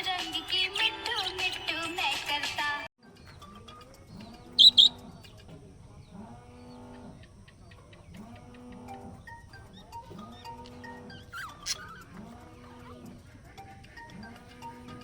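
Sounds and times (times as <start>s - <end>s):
parrot lower repeated calls: 4.6s - 5.0s
parrot sharp high chirps: 4.6s - 5.0s.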